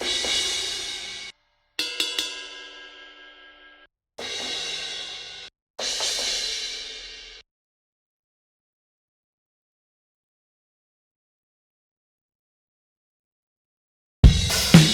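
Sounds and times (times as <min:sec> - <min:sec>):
cymbal strikes ringing: 0:00.0 - 0:03.8.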